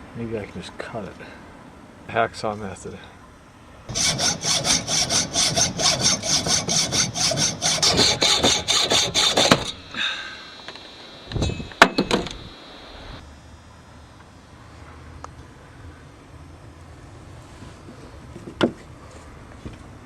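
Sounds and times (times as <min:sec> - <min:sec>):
hacksaw cutting: 0:03.9 - 0:09.9.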